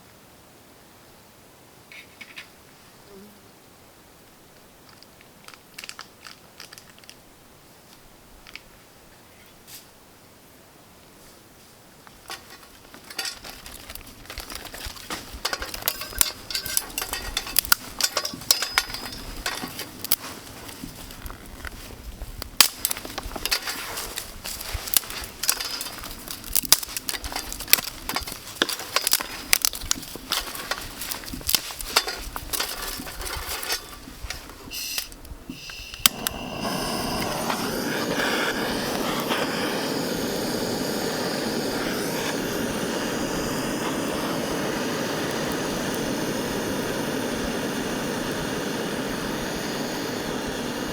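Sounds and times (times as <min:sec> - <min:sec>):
campfire crackling: 0:12.0 - 0:50.9
steady rushing noise: 0:36.0 - 0:50.9.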